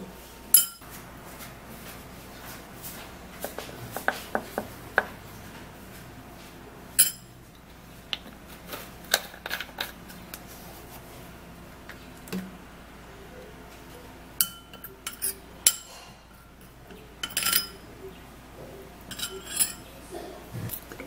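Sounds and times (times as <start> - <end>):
spoon clinking against a bowl: 0.5 - 0.8, 7.0 - 7.3, 14.4 - 17.9, 19.1 - 19.8.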